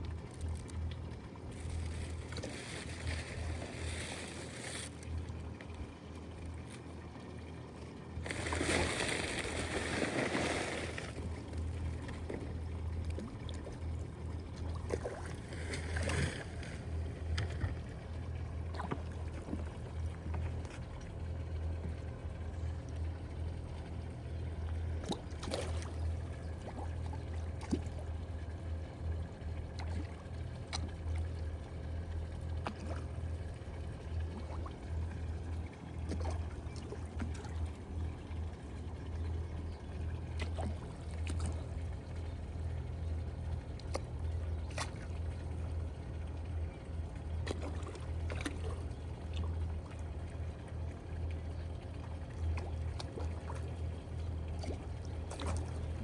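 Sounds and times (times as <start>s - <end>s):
steady low hum: 0.0s - 56.0s
water trickling into pond: 0.0s - 56.0s
small splashes: 0.1s - 5.8s, 8.2s - 18.0s, 25.0s - 28.5s, 32.5s - 38.1s, 40.3s - 42.4s, 47.4s - 50.8s, 51.9s - 56.0s.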